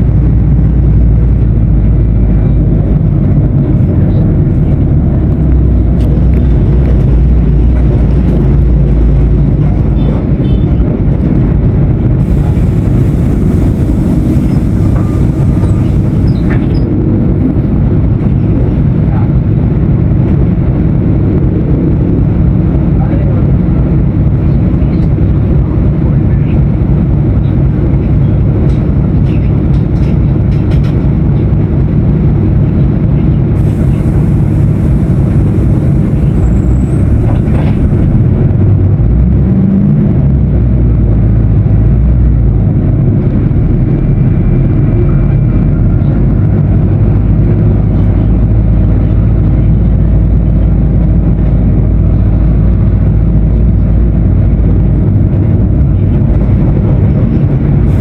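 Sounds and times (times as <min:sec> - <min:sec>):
bus diesel engine droning: 0:00.0 - 0:58.0
hiss: 0:12.2 - 0:16.5, 0:33.6 - 0:37.9.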